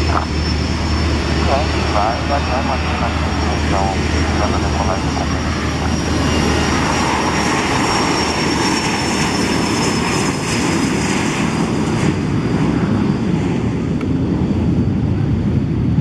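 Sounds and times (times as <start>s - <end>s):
jet engines at takeoff: 0.0s - 16.0s.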